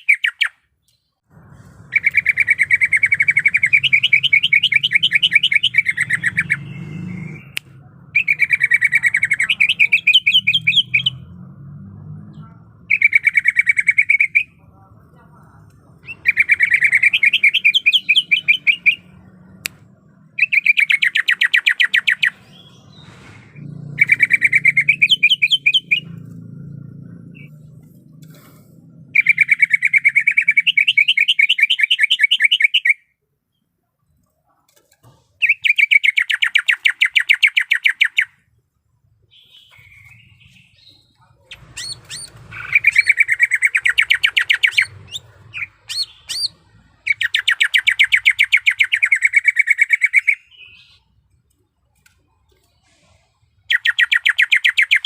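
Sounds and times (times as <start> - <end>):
bird singing rapid trills: 1.9 - 11.4, 12.0 - 14.6, 15.8 - 23.1, 23.7 - 28.1, 29.0 - 33.0, 35.4 - 38.5, 39.3 - 51.2, 53.6 - 55.0.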